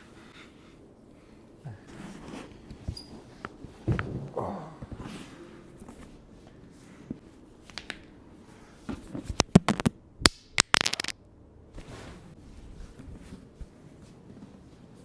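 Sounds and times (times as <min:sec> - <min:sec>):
spinal joints cracking: 0:09.4 - 0:10.0, 0:10.6 - 0:11.1.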